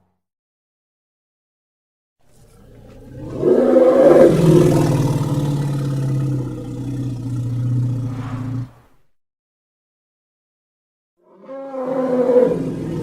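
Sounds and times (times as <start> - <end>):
long low creature roar: 2.4 - 8.8, 11.2 - 13.0.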